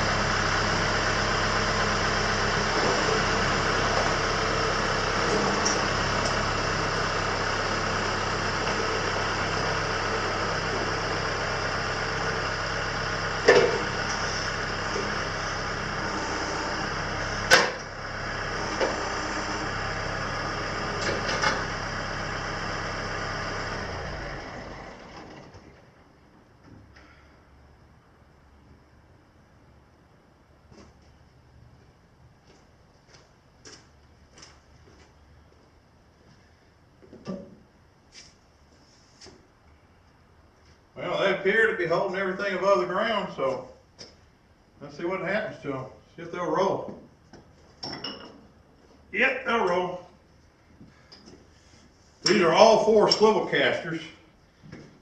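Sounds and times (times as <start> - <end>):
engine idling: 0.0 - 26.4
engine shutting off: 0.0 - 28.0.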